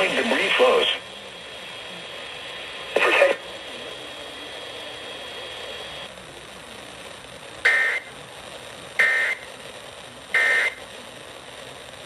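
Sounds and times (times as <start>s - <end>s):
steady hiss: 0.0s - 12.0s
two-tone digital data bursts: 9.0s - 9.5s, 10.4s - 10.8s.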